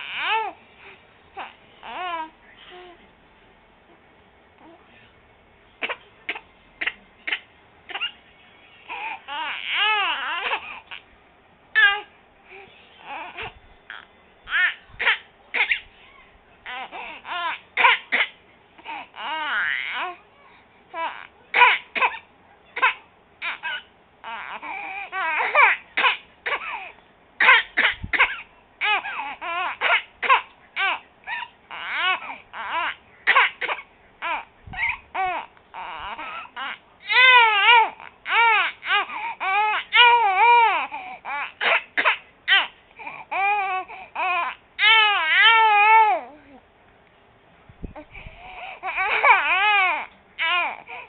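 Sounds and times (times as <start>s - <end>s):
baby crying: 0.0s - 0.6s, 1.4s - 2.9s, 8.8s - 11.0s, 11.8s - 12.1s, 13.0s - 20.2s, 20.9s - 22.2s, 22.8s - 46.6s, 48.4s - 51.0s.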